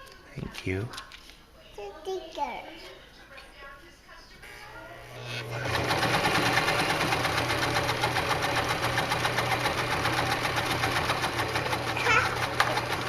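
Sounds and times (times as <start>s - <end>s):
sewing machine stitching: 5.2s - 13.0s.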